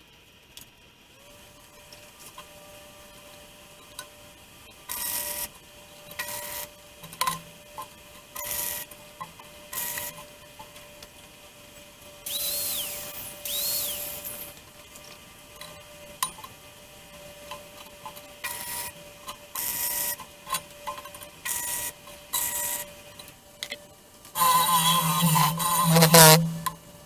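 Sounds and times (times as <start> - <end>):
faint steady hum: 24.3 - 27.0
welder arc crackling sizzle: 24.4 - 26.9.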